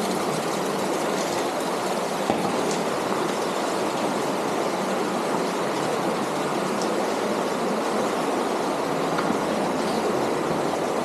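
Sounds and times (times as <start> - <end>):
cave stream running over rocks: 0.0 - 11.0.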